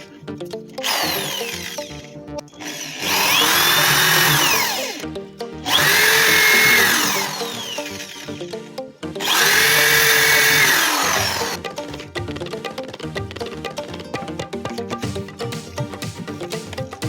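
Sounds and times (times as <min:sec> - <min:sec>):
background music: 0:00.0 - 0:17.0
power tool whining: 0:00.8 - 0:12.1.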